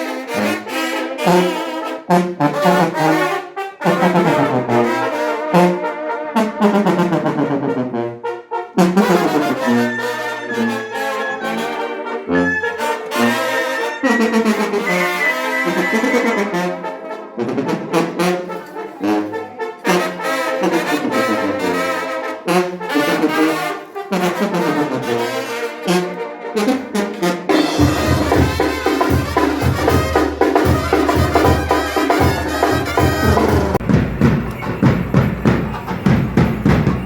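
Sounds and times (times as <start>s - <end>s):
brass band playing a melody: 0.0s - 37.0s
heavy steady drum beat: 27.5s - 37.0s.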